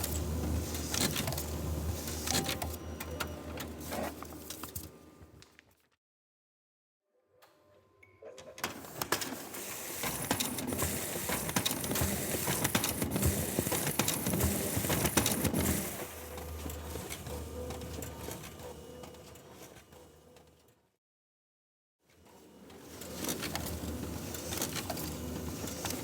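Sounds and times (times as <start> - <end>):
printer humming: 0.0 - 4.5, 9.5 - 20.4, 22.7 - 26.0.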